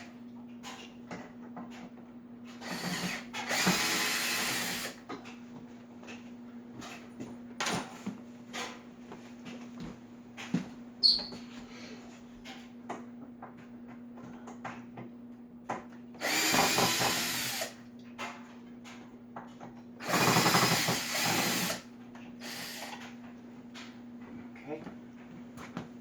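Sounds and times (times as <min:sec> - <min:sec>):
power drill backing out screws: 0:02.6 - 0:05.0, 0:16.2 - 0:17.7, 0:20.0 - 0:23.0.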